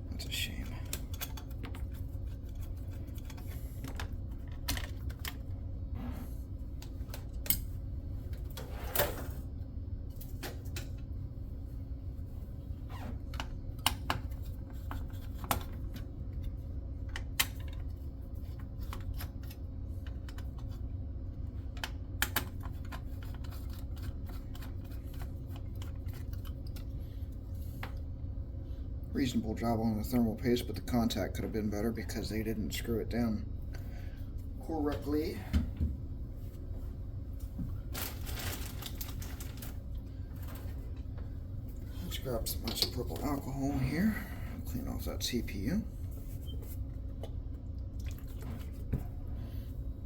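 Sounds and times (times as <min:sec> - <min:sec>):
steady low hum: 0:00.0 - 0:50.0
clicks and knocks of small parts: 0:00.8 - 0:05.4, 0:17.0 - 0:17.9.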